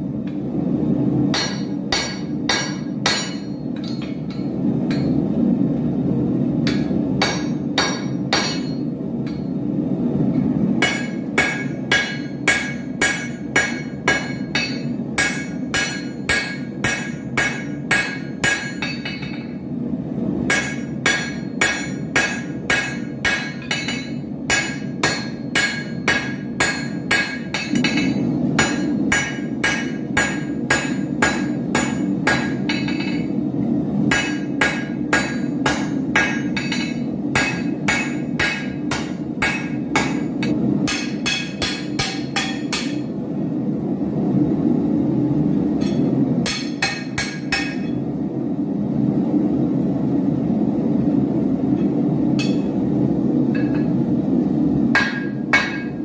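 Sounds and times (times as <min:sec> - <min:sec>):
hammer striking steel on anvil: 0:01.3 - 0:05.2, 0:06.6 - 0:09.6, 0:10.3 - 0:19.6, 0:20.5 - 0:33.3, 0:34.1 - 0:43.1, 0:45.8 - 0:48.0, 0:51.8 - 0:52.8, 0:53.5 - 0:54.0, 0:54.9 - 0:56.0.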